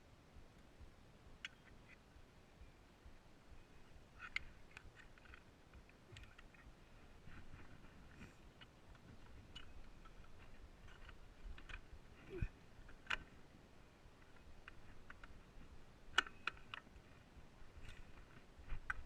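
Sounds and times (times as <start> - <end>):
light clicks and taps: 4.2 - 13.4, 14.2 - 19.0.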